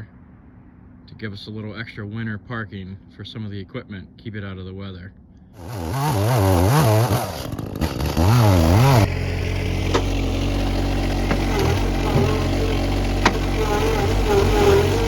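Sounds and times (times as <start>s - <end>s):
chainsaw engine revving: 5.6s - 15.0s.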